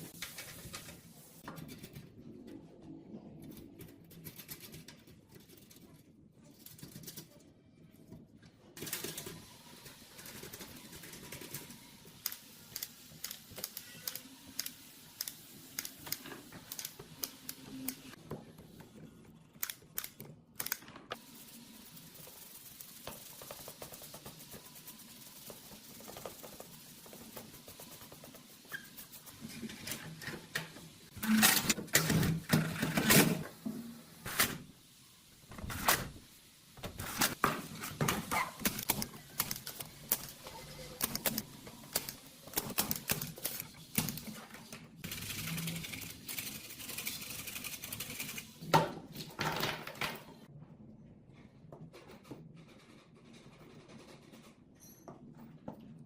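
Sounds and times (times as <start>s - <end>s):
tools clicking and tapping: 12.2s - 18.0s.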